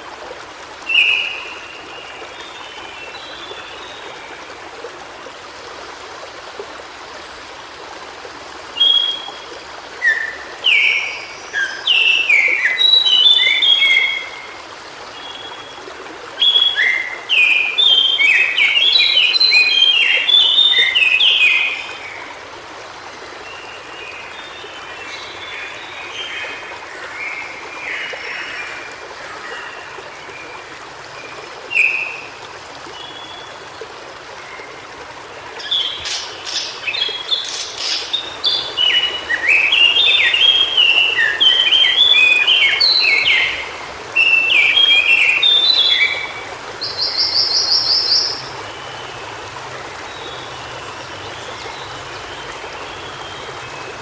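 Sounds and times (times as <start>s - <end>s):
bird warbling song: 35.6s - 48.5s.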